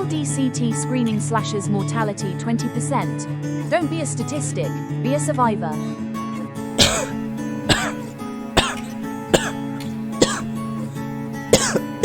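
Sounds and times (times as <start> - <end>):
background music: 0.0 - 12.0
person coughing: 6.8 - 10.6, 11.5 - 12.0.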